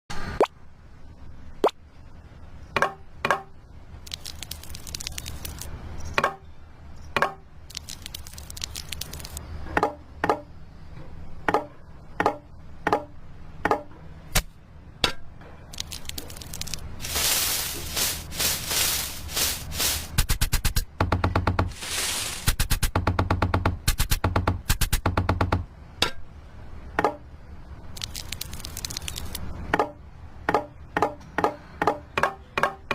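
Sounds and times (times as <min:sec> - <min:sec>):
small bricks clicking and tapping: 0:04.1 - 0:06.3, 0:07.7 - 0:09.4, 0:15.7 - 0:20.8, 0:28.0 - 0:29.4
scraping and rubbing: 0:15.8 - 0:20.8, 0:21.7 - 0:22.9.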